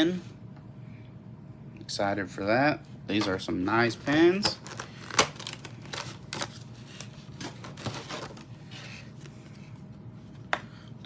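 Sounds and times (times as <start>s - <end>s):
packaging rustle: 3.9s - 9.3s.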